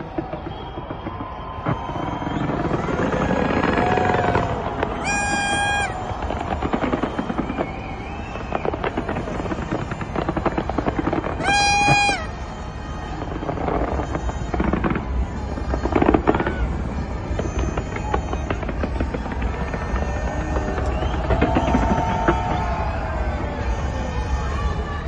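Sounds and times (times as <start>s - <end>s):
crowd hubbub: 0.0s - 25.0s
fireworks crackling and popping: 0.0s - 25.0s
loud horn-like tone: 4.9s - 6.2s, 11.2s - 18.6s.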